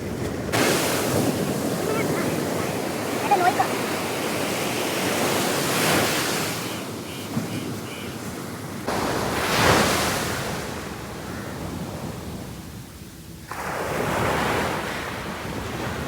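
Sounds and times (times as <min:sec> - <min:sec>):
sea waves breaking: 0:00.0 - 0:16.0
wind buffeting microphone: 0:00.0 - 0:16.0.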